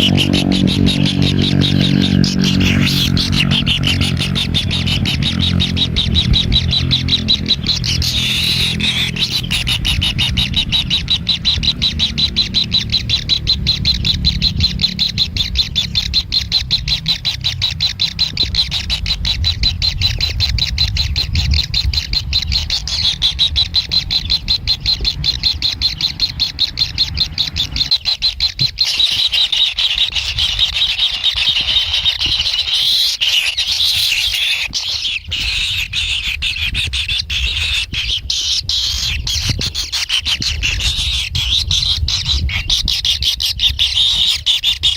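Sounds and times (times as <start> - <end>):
low rumble: 0.0 - 28.8
bird chicks begging calls: 0.0 - 44.9.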